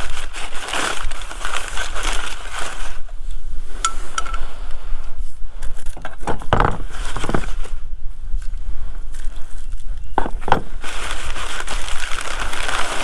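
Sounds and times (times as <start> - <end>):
handling rustle: 0.0 - 13.0
metal parts clinking: 3.8 - 4.5.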